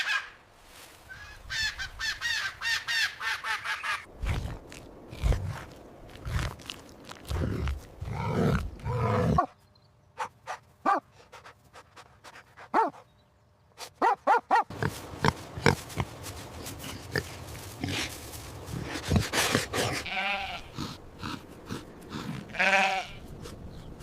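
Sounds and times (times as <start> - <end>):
low animal grunting: 4.2 - 9.5, 16.8 - 23.1.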